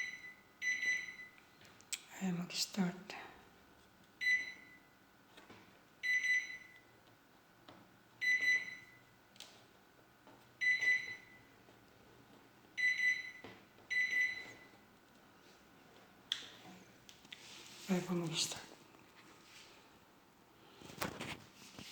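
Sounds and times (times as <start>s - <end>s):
microwave oven beeping: 0.0s - 1.5s, 4.2s - 5.1s, 6.0s - 7.0s, 8.1s - 9.3s, 10.5s - 11.7s, 12.7s - 14.9s.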